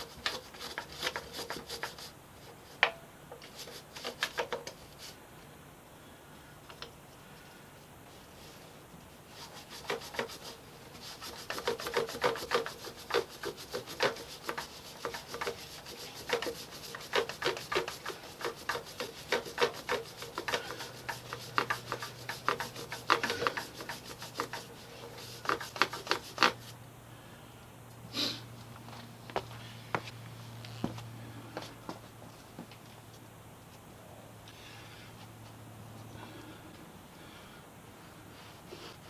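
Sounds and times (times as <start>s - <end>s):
chain being scrubbed: 9.4s - 26.7s.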